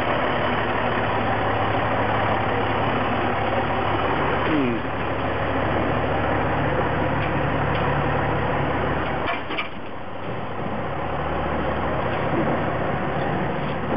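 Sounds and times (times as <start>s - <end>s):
large engine running: 0.0s - 13.9s.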